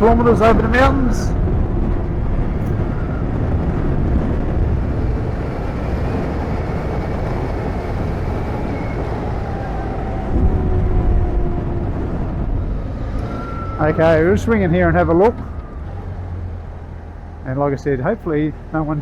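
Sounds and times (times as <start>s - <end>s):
wind and road noise: 0.0s - 19.0s.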